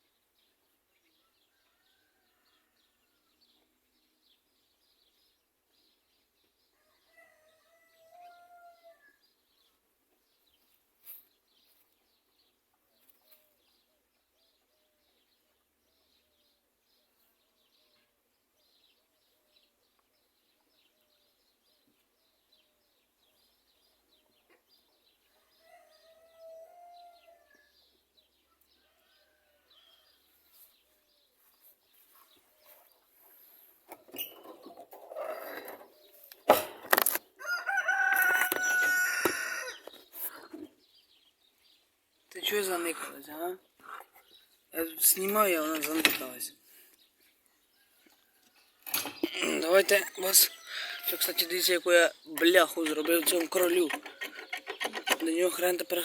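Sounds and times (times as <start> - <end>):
rooster crowing: 6.8 - 9.1, 25.5 - 27.6, 37.4 - 39.9, 50.2 - 51.6.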